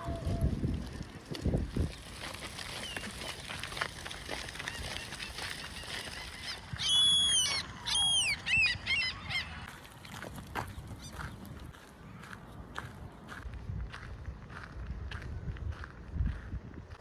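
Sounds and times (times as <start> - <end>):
bird squealing calls: 5.8 - 9.7.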